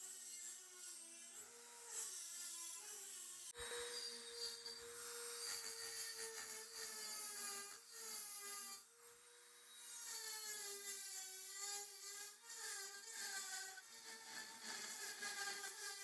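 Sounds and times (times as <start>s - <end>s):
power tool whirring cutting metal: 0.0s - 16.0s.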